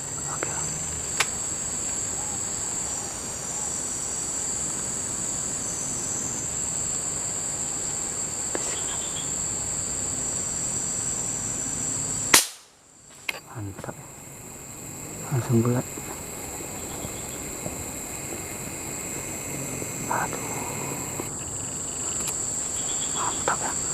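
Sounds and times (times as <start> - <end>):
insects droning: 0.0 - 23.9
air rifle shot: 12.3 - 12.8.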